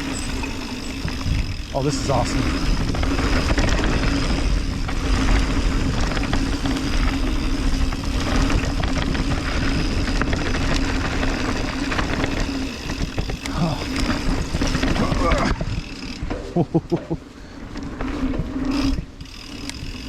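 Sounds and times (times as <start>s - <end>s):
wind buffeting microphone: 0.0s - 16.0s
tyre rumble: 0.0s - 17.1s
bike rattling over bumps: 0.0s - 20.0s.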